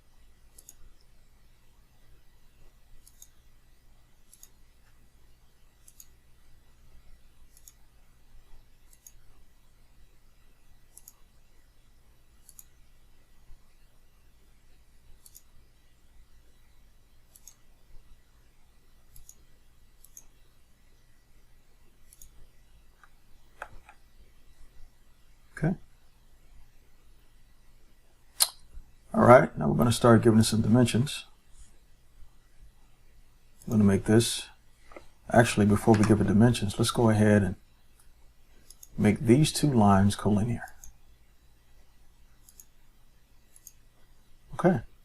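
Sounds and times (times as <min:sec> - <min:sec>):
computer mouse clicks: 0:00.5 - 0:01.0, 0:03.0 - 0:03.4, 0:04.2 - 0:04.6, 0:05.8 - 0:06.2, 0:07.5 - 0:07.9, 0:08.9 - 0:09.2, 0:10.9 - 0:11.3, 0:12.4 - 0:12.8, 0:15.2 - 0:15.5, 0:17.3 - 0:17.7, 0:19.1 - 0:20.4, 0:22.0 - 0:24.0, 0:38.0 - 0:39.0, 0:40.7 - 0:41.0, 0:42.4 - 0:42.8, 0:43.5 - 0:43.8.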